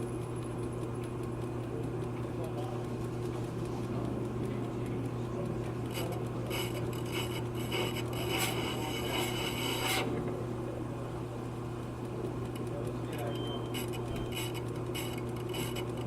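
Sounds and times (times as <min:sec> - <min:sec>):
brake lathe humming: 0:00.0 - 0:10.9
cutting bit scraping rotor: 0:02.0 - 0:10.3, 0:12.4 - 0:16.0.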